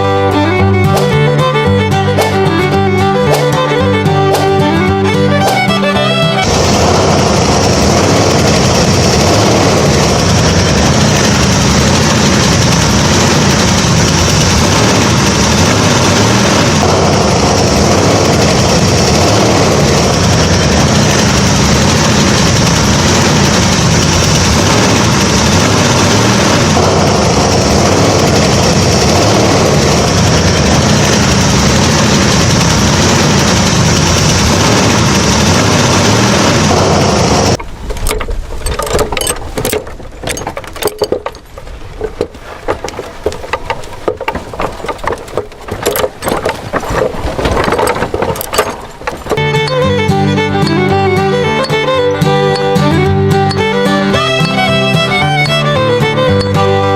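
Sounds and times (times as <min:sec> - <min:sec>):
engine running loudly: 0:00.0 - 0:37.6, 0:42.0 - 0:56.9.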